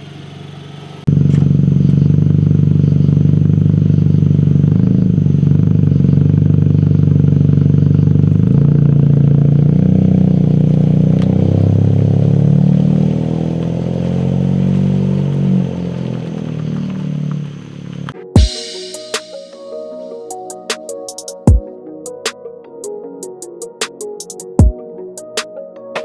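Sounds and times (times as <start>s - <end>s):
car engine droning: 0.0s - 18.3s.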